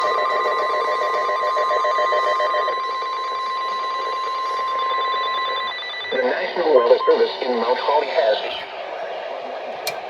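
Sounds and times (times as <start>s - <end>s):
shrill warning alarm tone: 0.0s - 8.6s.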